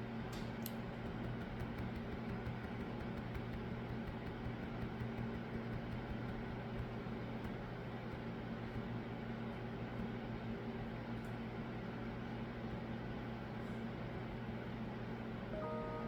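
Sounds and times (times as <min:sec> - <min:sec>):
low hum: 0:15.5 - 0:16.0.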